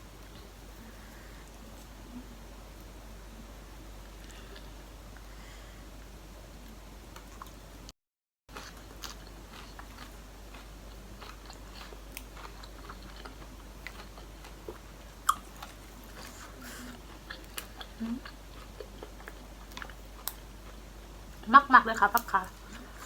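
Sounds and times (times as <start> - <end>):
person chewing food: 8.5 - 21.5.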